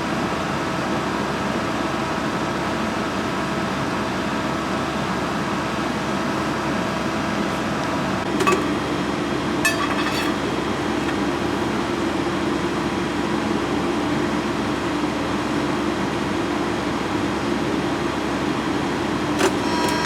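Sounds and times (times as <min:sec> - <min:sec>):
hydraulic machine humming: 0:07.6 - 0:12.0, 0:19.2 - 0:20.0.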